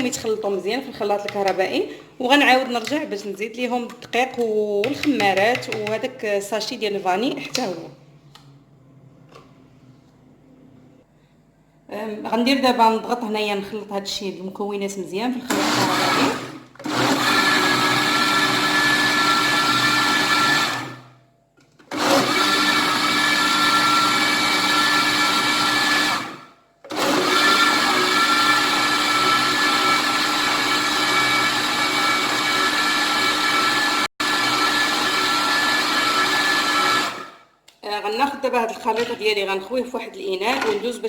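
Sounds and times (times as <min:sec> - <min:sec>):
electric blender running: 0:15.5 - 0:21.1, 0:21.9 - 0:37.4.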